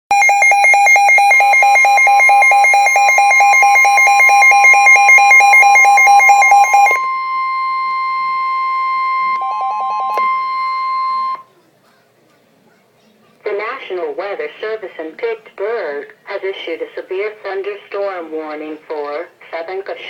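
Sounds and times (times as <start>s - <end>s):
rapid electronic alarm beeping: 0.1s - 11.5s
steady warning alarm tone: 0.1s - 11.5s.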